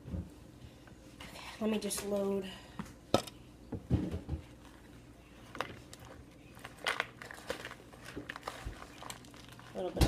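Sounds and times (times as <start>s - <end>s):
crinkling: 4.6s - 10.0s.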